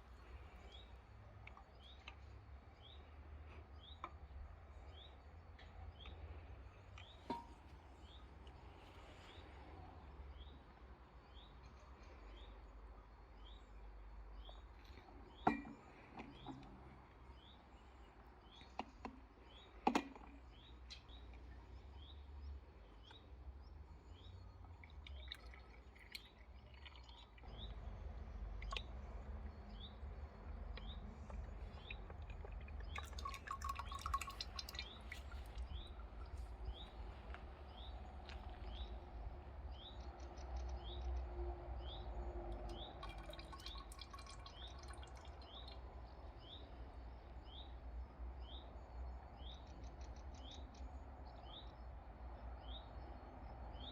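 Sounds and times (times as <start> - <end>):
low steady hum: 19.5 - 53.8
bird chirping: 28.6 - 47.8.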